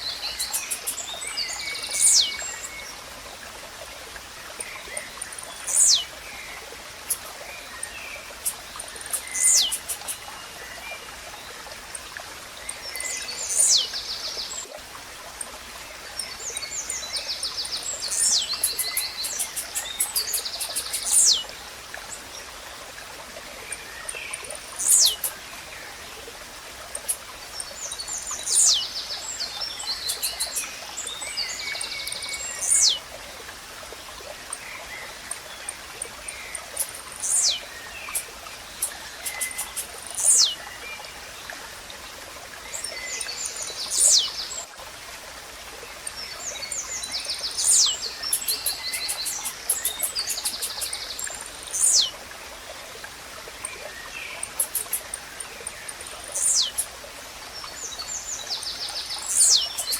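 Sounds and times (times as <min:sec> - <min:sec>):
nature ambience hiss: 0:00.0 - 0:59.9
rapid ticking chirps: 0:00.2 - 0:02.4, 0:04.6 - 0:06.1, 0:07.0 - 0:10.3, 0:16.2 - 0:21.5, 0:23.7 - 0:25.4, 0:26.8 - 0:28.9, 0:29.7 - 0:30.8, 0:34.5 - 0:40.6, 0:47.0 - 0:52.1, 0:54.3 - 0:57.0, 0:59.2 - 0:59.9.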